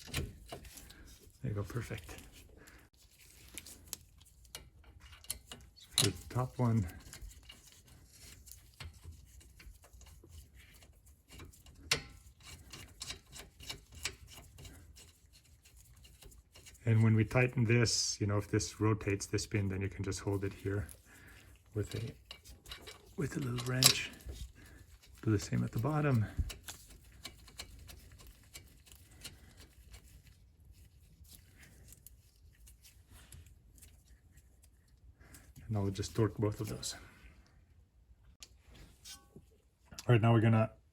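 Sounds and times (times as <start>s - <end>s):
hand tools clicking on metal: 11.3s - 15.2s, 21.8s - 29.7s.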